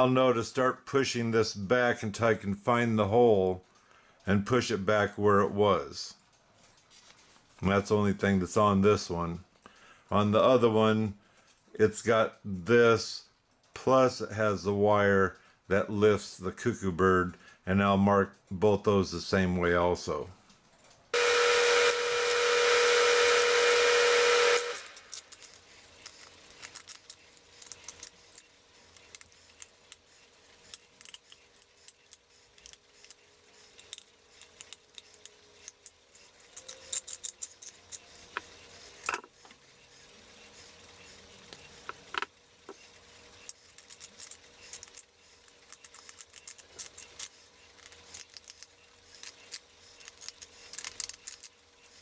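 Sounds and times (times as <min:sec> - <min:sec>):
hand tools tapping clock parts: 0:21.2 - 0:52.0.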